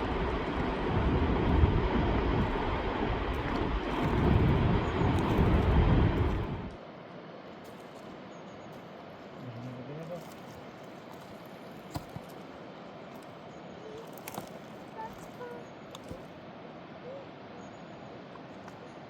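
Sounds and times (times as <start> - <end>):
fast river rushing: 0.0 - 6.7
deep rumble: 0.0 - 6.8.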